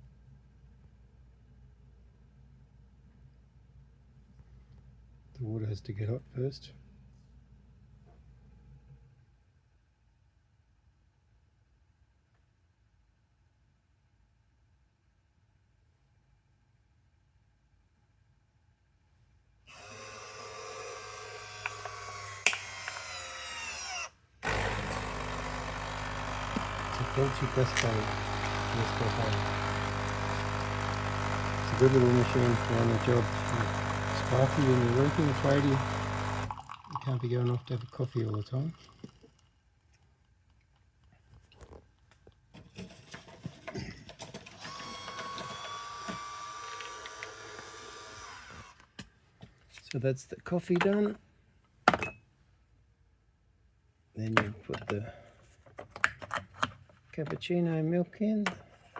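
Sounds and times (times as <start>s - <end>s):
coffee machine pump buzzing: 19.7s - 37.1s, 44.6s - 48.8s.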